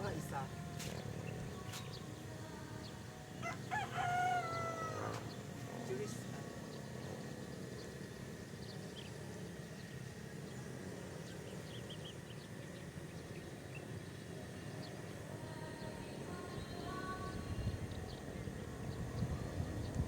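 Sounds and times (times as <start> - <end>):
steady low rumble: 5.2 - 20.0.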